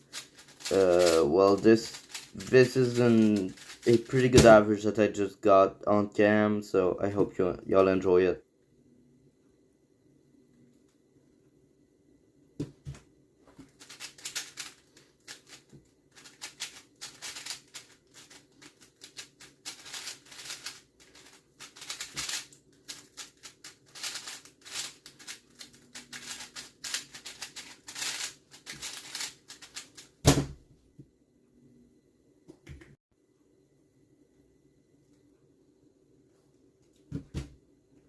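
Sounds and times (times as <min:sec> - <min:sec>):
speed cube plastic clicking: 0:00.1 - 0:04.1, 0:13.8 - 0:30.1
loud thump: 0:30.2 - 0:30.6.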